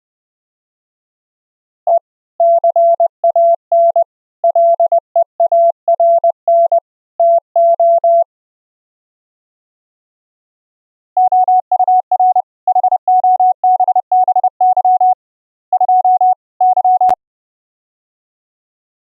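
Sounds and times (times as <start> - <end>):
morse code sine tone: 1.9 - 8.3, 11.2 - 17.2.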